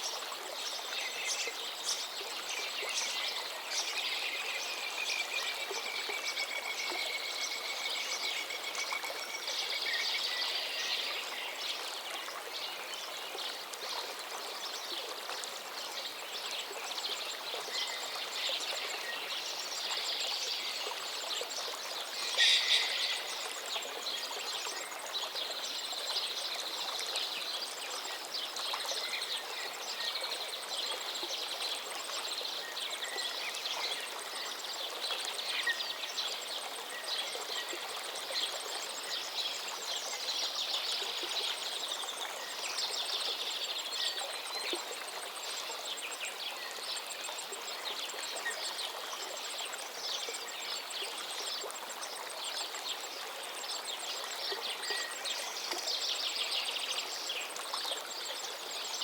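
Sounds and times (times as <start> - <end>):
river flowing: 0.0 - 59.0
birds calling and singing: 22.1 - 23.6.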